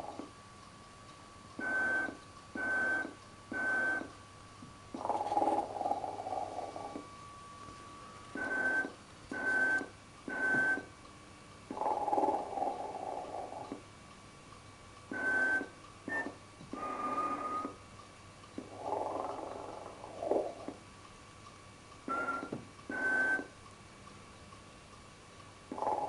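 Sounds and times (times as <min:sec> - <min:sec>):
toy snoring: 0:05.0 - 0:07.0, 0:11.7 - 0:13.7, 0:18.6 - 0:20.7, 0:25.7 - 0:26.0.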